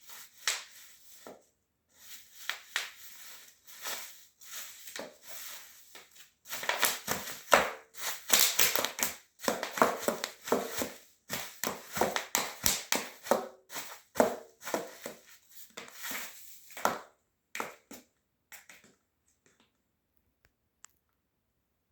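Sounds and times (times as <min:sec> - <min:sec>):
bubble wrap popping underfoot: 0:00.0 - 0:01.4, 0:02.0 - 0:17.9.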